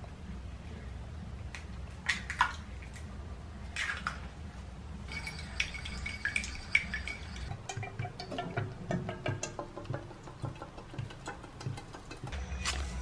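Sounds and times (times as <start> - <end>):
steady low hum: 2.7 - 13.0.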